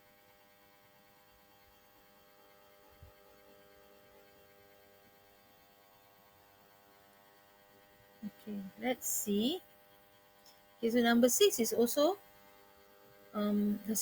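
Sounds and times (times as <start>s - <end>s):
faint electrical hum: 0.0s - 14.0s.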